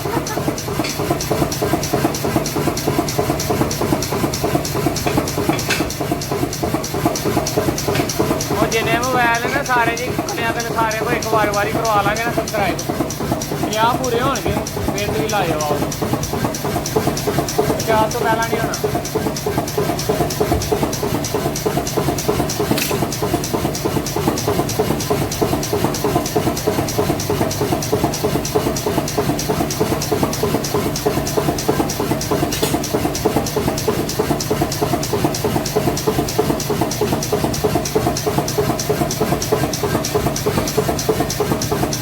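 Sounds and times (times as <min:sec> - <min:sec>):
engine running with rapid beat: 0:00.0 - 0:42.0.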